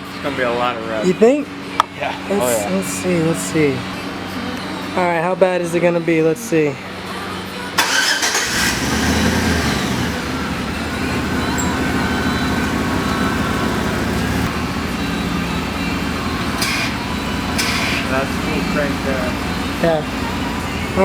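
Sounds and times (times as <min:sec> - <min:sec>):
pickup engine starting and idling: 0:07.8 - 0:21.0.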